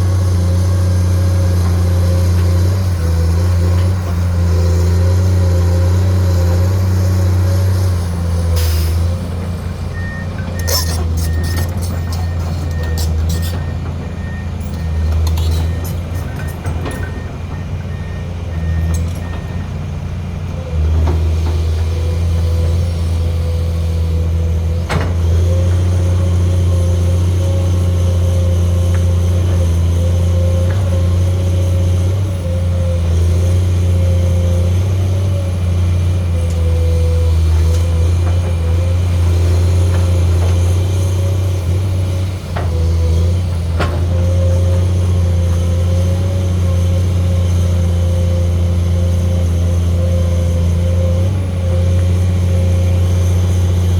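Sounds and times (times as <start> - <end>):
excavator engine drone: 0.0 - 53.9
hydraulic whine: 5.8 - 17.6.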